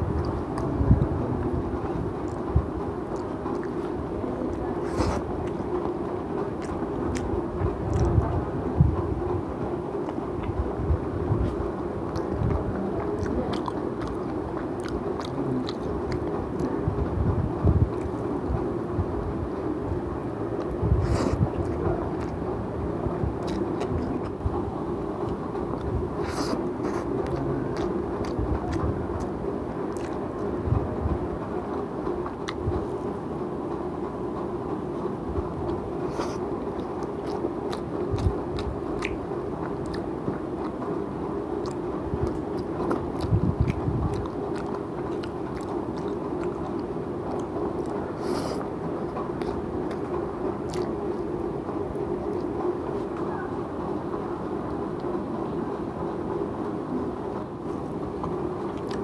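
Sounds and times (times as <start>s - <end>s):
steady low background hum: 0.0s - 59.0s
person chewing food: 1.8s - 8.2s, 10.0s - 10.6s, 11.4s - 16.8s, 20.4s - 22.5s, 23.2s - 30.6s, 35.7s - 53.3s, 57.7s - 59.0s.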